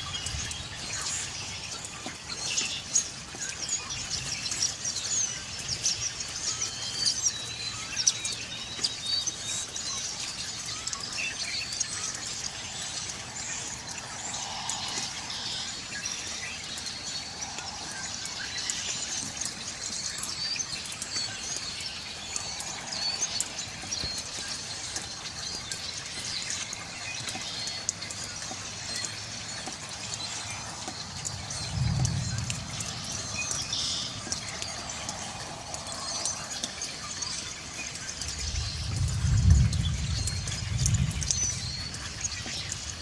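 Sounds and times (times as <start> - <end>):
songbirds chirping: 0.0 - 43.0.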